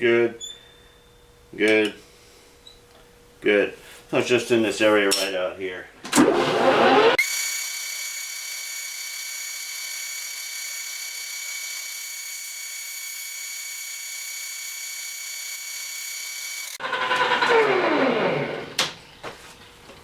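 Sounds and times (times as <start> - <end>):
lathe whining: 6.3 - 18.8.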